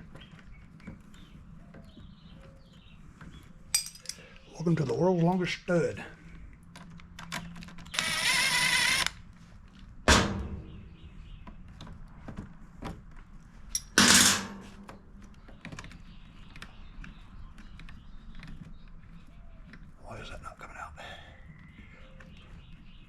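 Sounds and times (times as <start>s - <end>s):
whirring ratcheting tool burst: 7.9s - 9.2s
sharp metallic clank: 10.1s - 11.0s, 13.8s - 14.9s.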